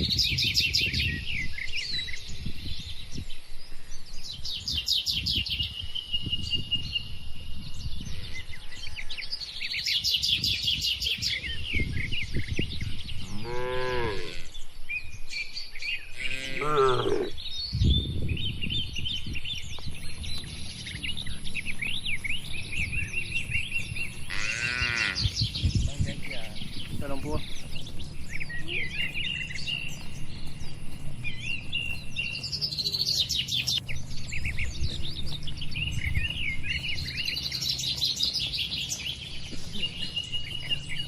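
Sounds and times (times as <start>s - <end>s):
birds chirping: 0.0s - 41.0s
cow mooing: 13.2s - 14.5s, 16.2s - 17.4s, 24.3s - 25.2s.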